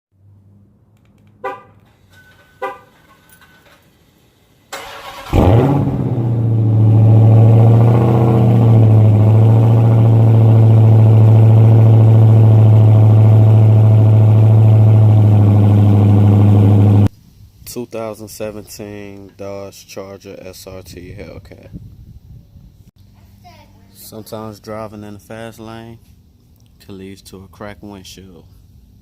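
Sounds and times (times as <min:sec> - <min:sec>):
car horn chirps: 0:01.4 - 0:03.7
car engine starter cranking: 0:04.7 - 0:06.0
car engine revving and idling: 0:04.8 - 0:17.1.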